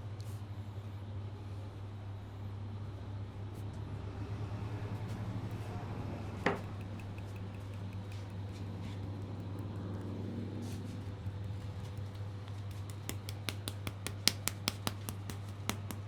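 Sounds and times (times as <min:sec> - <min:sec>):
steady low hum: 0:04.6 - 0:16.0.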